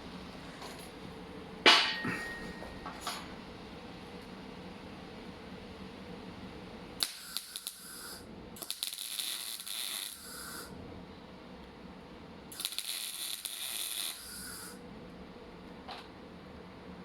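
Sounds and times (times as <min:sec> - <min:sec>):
low steady hum: 0:00.0 - 0:07.0
welder arc crackling and sizzling: 0:03.0 - 0:10.8, 0:12.5 - 0:14.8.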